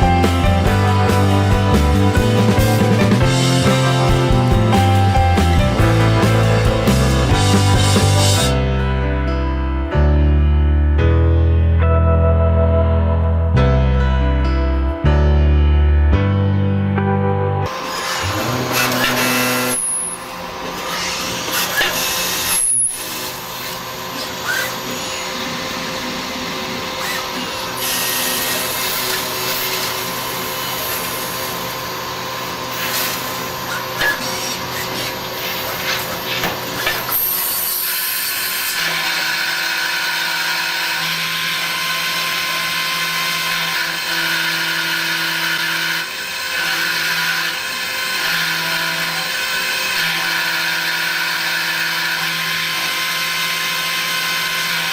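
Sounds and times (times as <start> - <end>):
lathe mechanical whine and hum: 17.7 - 54.9.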